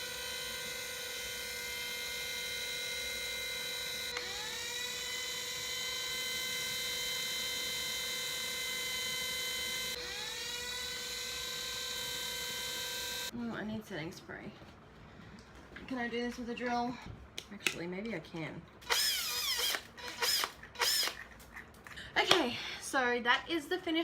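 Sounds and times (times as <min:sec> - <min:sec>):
cordless drill whining: 0:00.0 - 0:13.3, 0:18.8 - 0:21.2.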